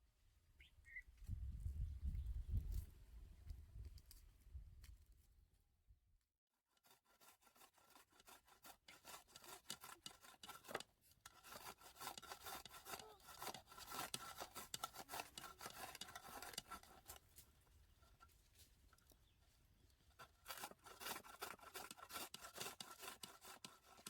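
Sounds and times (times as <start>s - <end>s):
rapid rasping strokes: 6.8s - 18.3s, 20.1s - 24.0s.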